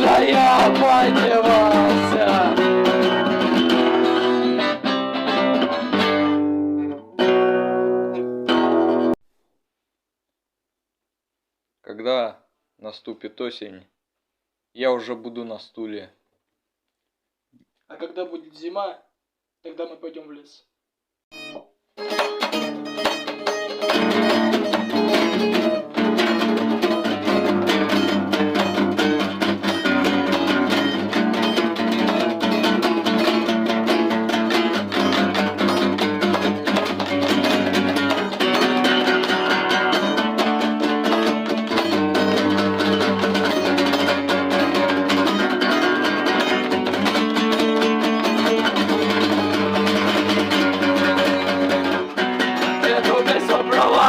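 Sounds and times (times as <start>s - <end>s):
acoustic guitar playing: 0.0s - 9.3s, 21.3s - 54.0s.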